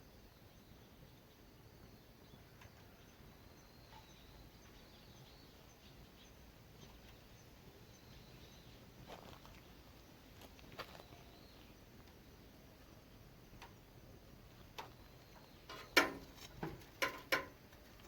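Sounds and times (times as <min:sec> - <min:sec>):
faint high chirp: 0:00.0 - 0:10.0, 0:10.7 - 0:16.0
soft ticks: 0:13.6 - 0:13.8.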